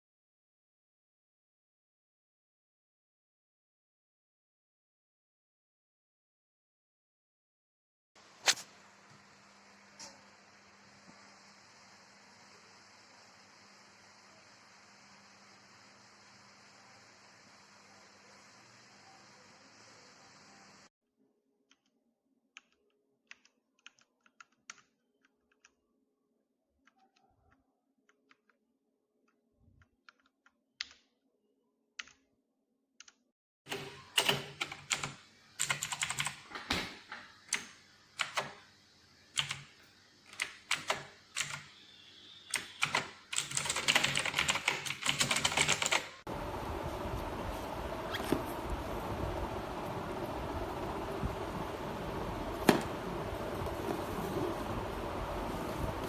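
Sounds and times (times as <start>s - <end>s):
steady rushing noise: 46.3s - 56.0s.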